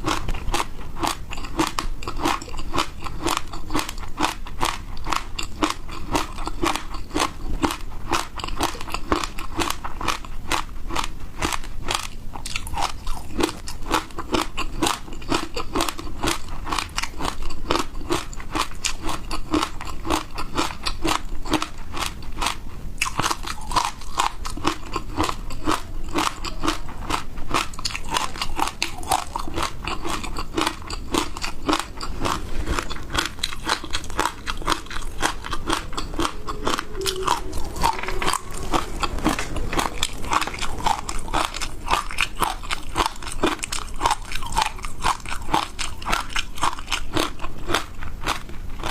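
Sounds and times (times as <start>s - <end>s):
ice being chewed crunching: 0.0s - 48.9s.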